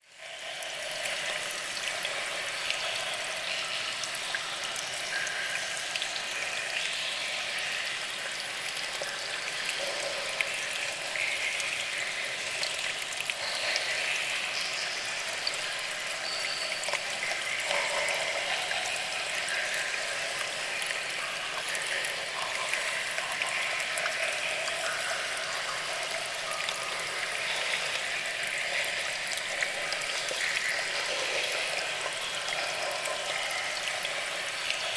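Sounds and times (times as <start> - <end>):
trickling water: 0.0 - 34.9
water drips: 0.1 - 34.9.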